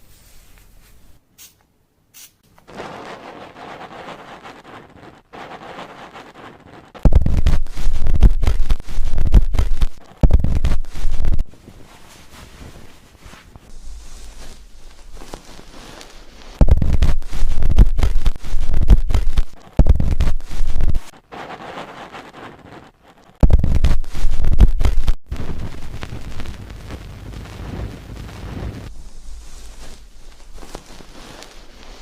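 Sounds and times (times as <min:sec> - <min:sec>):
fingers scrubbing shampooed hair: 0:07.0 - 0:11.5, 0:13.7 - 0:21.2, 0:28.9 - 0:32.0.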